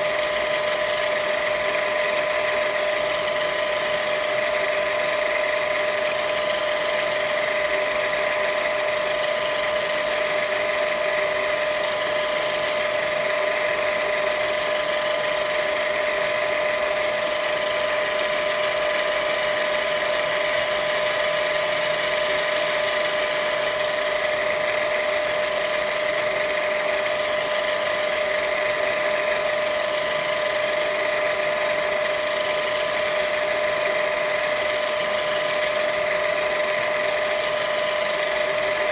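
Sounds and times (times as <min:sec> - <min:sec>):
milling machine whining: 0:00.0 - 0:38.9.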